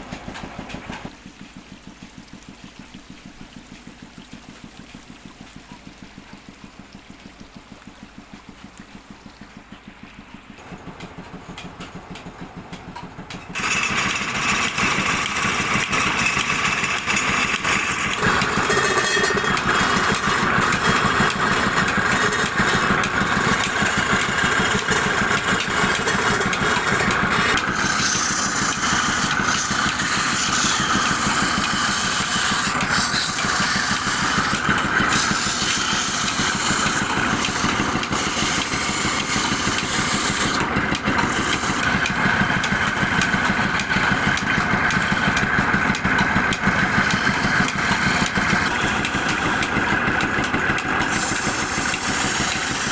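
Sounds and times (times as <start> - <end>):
power tool motor running: 13.5 - 52.9.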